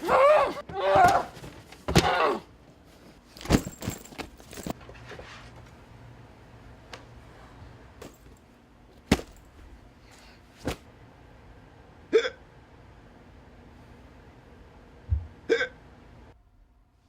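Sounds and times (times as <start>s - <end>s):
person hiccuping: 12.1s - 12.5s, 15.5s - 15.8s.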